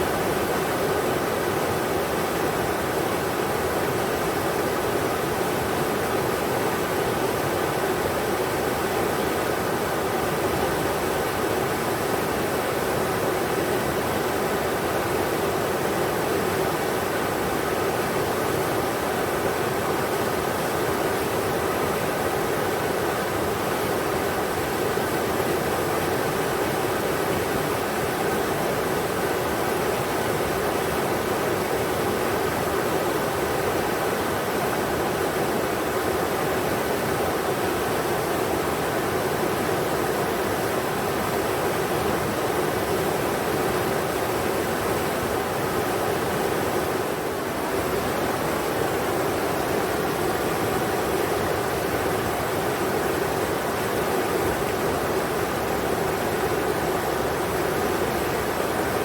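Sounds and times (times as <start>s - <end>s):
river water rushing over rocks: 0.0s - 59.0s.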